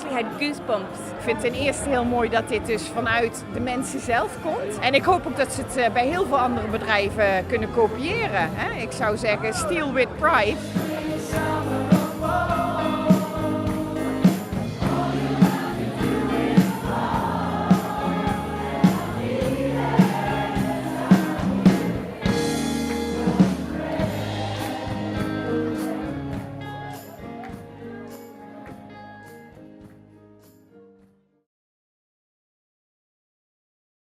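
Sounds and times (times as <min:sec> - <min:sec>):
choir singing: 0:00.0 - 0:02.1, 0:09.3 - 0:26.6
band accompaniment with steady beat: 0:10.5 - 0:30.0.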